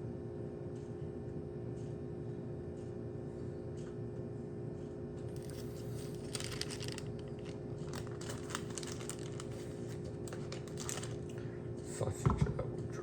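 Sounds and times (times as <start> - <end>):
steady low hum: 2.0 - 13.0
plastic packaging crinkling and tearing: 5.3 - 11.5.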